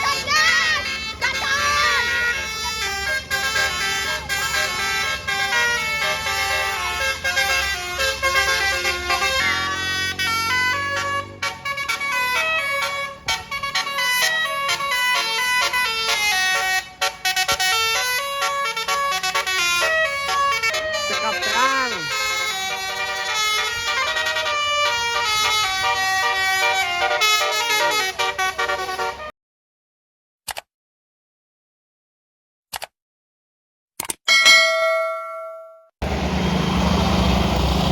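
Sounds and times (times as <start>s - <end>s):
low engine rumble: 0.0s - 21.2s, 36.0s - 37.9s
bus horn playing a tune: 0.0s - 29.3s.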